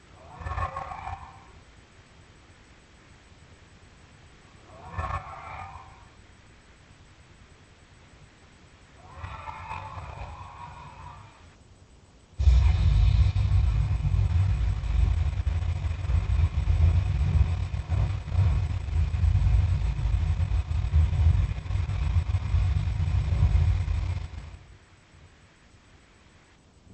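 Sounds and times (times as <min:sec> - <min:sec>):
loud low dragon rumble: 0:09.0 - 0:11.5, 0:12.4 - 0:24.8.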